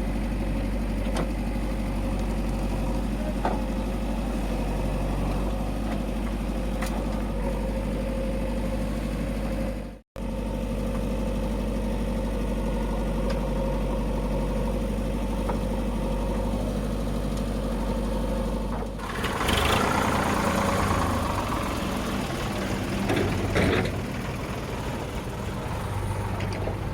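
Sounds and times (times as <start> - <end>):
diesel engine idling: 0.0 - 26.9
loud rough noise: 19.0 - 26.9.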